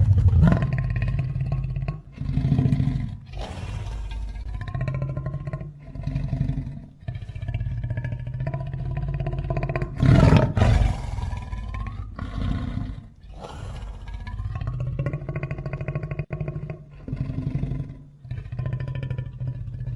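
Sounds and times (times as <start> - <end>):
monster roars: 0.0 - 1.3, 3.4 - 4.4, 10.0 - 11.9, 13.3 - 14.2.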